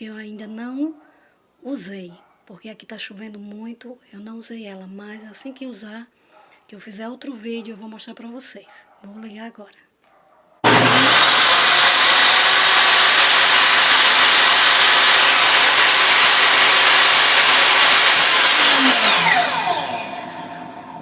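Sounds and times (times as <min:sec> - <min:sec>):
circular saw running: 0:10.6 - 0:21.0
saw winding down: 0:10.6 - 0:21.0.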